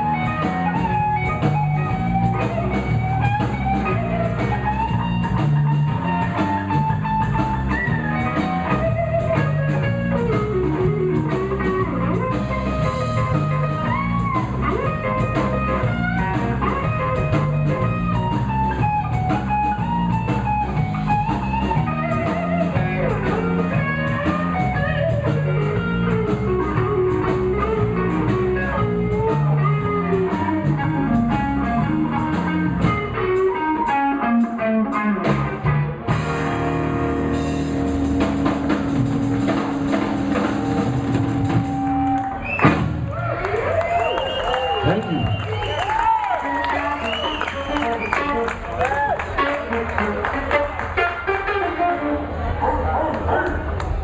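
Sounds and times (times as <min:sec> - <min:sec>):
electric guitar solo: 0:00.0 - 0:42.7, 0:45.8 - 0:52.6
drum kit steady beat: 0:00.0 - 0:43.1
bass guitar: 0:00.0 - 0:54.0.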